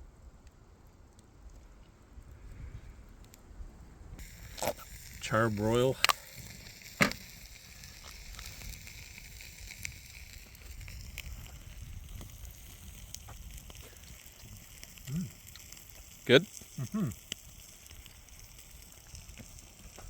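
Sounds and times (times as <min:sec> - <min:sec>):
campfire rumbling and crackling: 0:00.0 - 0:20.0.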